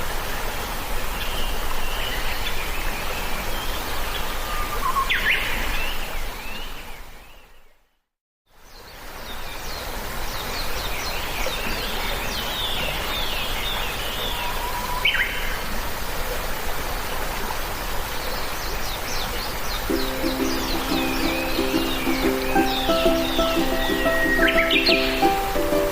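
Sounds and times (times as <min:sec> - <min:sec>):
birds chirping and calling: 0:19.9 - 0:25.9
music notes: 0:19.9 - 0:25.9.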